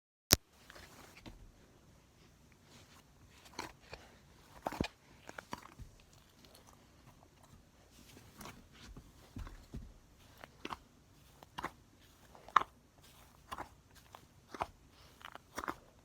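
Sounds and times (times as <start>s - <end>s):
slime squishing with sticky pops: 8.3s - 16.0s.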